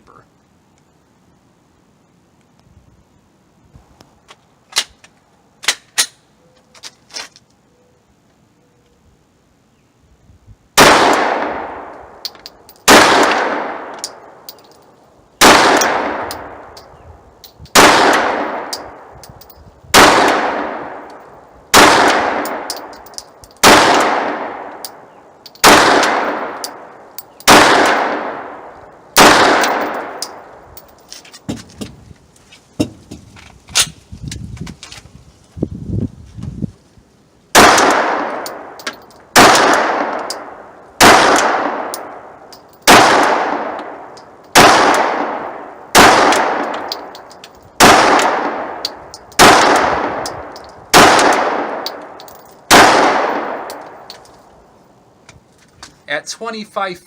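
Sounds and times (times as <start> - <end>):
pistol shots with echo: 10.8 - 12.0, 12.8 - 14.5, 15.4 - 16.7, 17.7 - 19.1, 19.9 - 21.1, 21.7 - 23.0, 23.6 - 25.0, 25.6 - 30.5, 37.6 - 47.2, 47.8 - 50.3, 50.9 - 53.9.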